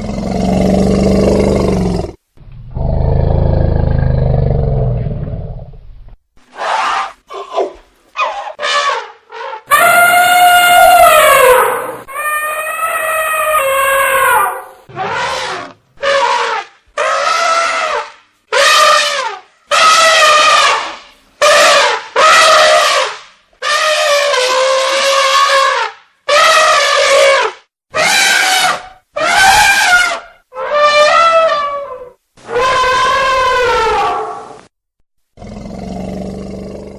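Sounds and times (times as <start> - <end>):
elephant trumpeting: 6.5 - 34.5.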